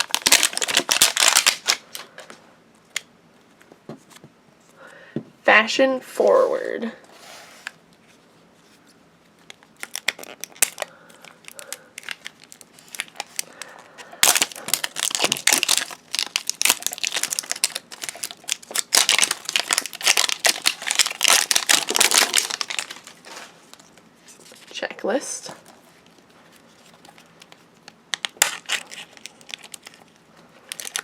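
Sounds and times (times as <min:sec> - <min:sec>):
plastic wrapping crinkling: 0:00.0 - 0:02.2, 0:09.3 - 0:24.8, 0:25.6 - 0:31.0.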